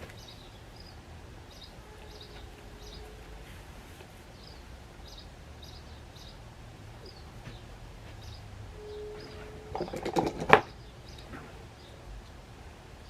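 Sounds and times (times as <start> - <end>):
faint bird chirps: 0.1 - 3.4, 7.0 - 9.7
sharp clicks and knocks: 9.2 - 11.5.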